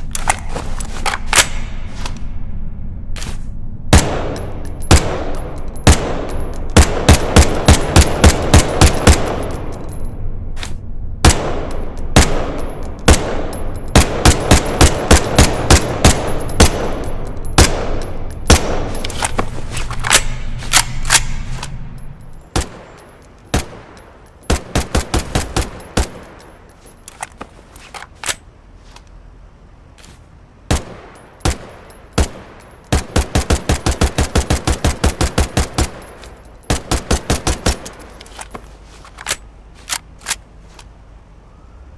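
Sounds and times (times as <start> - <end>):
rifle shots cracking: 3.9 - 9.6, 11.2 - 19.2.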